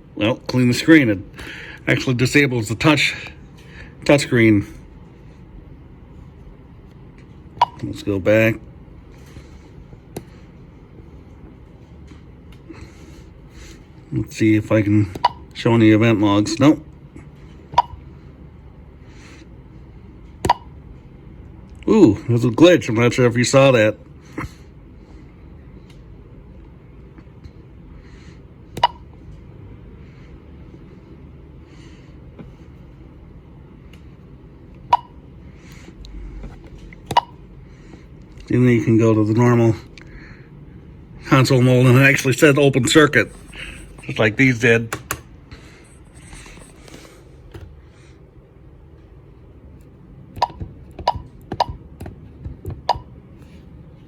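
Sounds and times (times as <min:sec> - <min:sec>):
faint steady hum: 0:00.0 - 0:54.0
keypad beeps: 0:07.6 - 0:07.8, 0:17.8 - 0:18.0, 0:28.8 - 0:29.0, 0:37.1 - 0:37.4, 0:50.4 - 0:51.8, 0:52.8 - 0:53.1.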